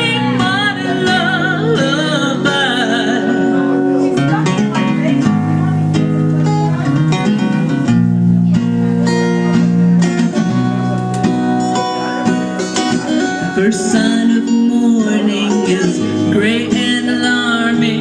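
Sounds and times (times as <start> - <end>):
person singing: 0.0 - 4.4, 13.1 - 18.0
acoustic guitar strumming: 0.0 - 18.0.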